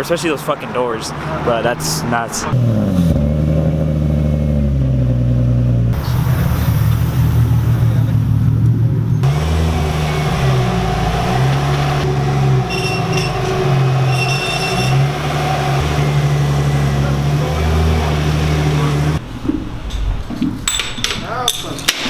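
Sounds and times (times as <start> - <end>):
car engine revving: 0.0 - 19.2.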